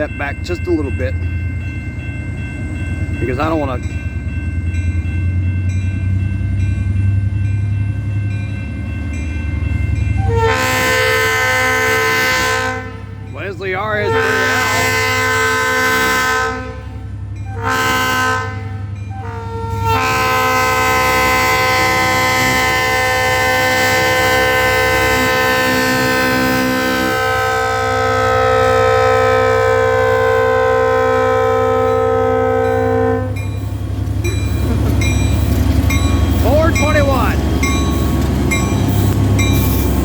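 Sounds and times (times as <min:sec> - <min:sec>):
diesel locomotive engine drone: 0:00.0 - 0:40.0
locomotive air horn blasts: 0:10.2 - 0:13.2, 0:13.9 - 0:33.4.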